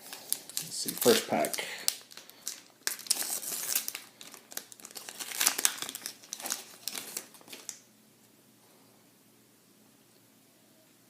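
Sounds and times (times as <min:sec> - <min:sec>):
foil wrapper crinkling and tearing: 0:00.0 - 0:07.8.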